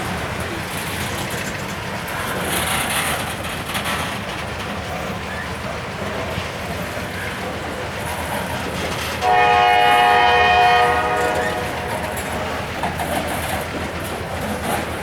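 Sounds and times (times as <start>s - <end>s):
freight train rumbling on rails: 0.0s - 15.0s
locomotive air horn blast: 9.2s - 12.8s.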